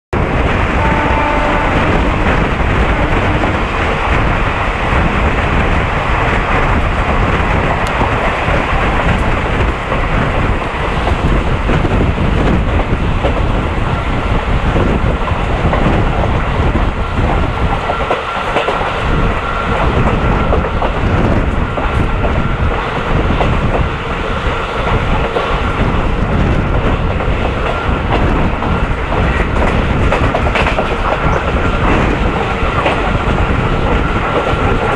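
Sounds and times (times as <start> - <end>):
locomotive high whine: 0.2 - 15.6
train wheels clattering: 0.2 - 34.9.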